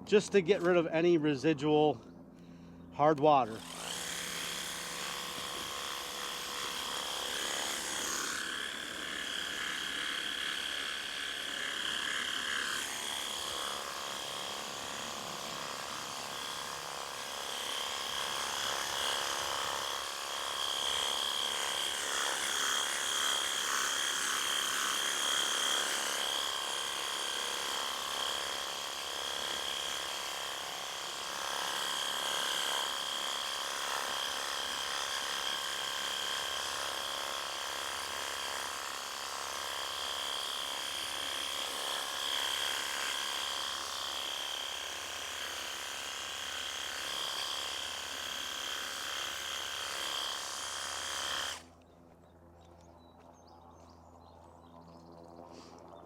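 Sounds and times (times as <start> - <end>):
pressure washer motor whine: 3.0 - 11.6.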